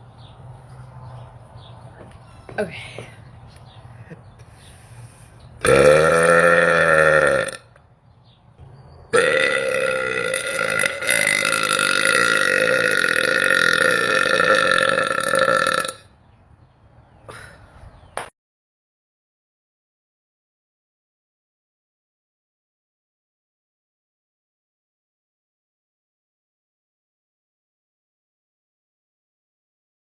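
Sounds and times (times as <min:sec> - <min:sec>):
woman burping: 0:05.6 - 0:07.7, 0:09.2 - 0:16.1.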